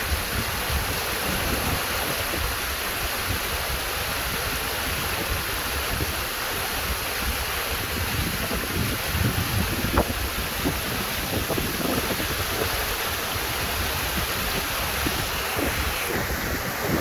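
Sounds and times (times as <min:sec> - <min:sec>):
waterfall pouring and splashing: 0:00.0 - 0:17.0.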